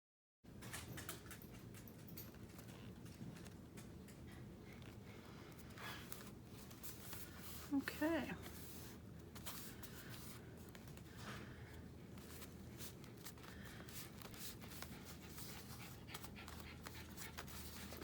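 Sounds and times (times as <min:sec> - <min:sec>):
low room hum: 0:00.5 - 0:18.0
paper rustling and tapping: 0:08.4 - 0:18.0.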